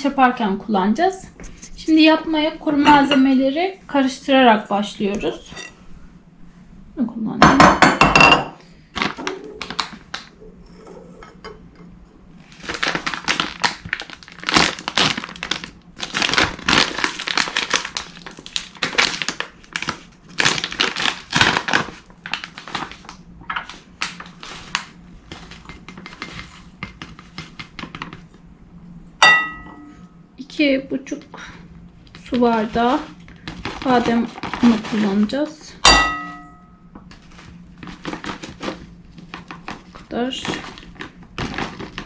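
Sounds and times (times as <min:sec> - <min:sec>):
plastic packet crinkling: 0:09.0 - 0:10.4, 0:12.5 - 0:26.3, 0:32.6 - 0:35.3, 0:37.1 - 0:42.0.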